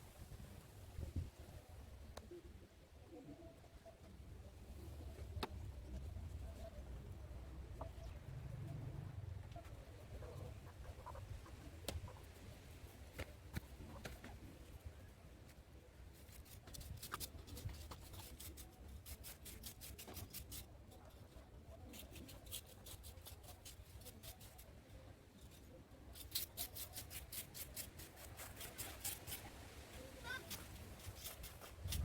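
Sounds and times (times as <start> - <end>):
quick scraping or snipping strokes: 16.1 - 24.7, 25.3 - 32.0.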